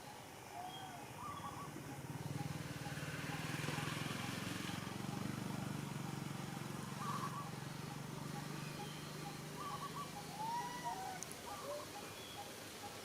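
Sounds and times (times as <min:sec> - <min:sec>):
bird chirping: 0:00.1 - 0:13.0
small engine running: 0:02.1 - 0:10.4.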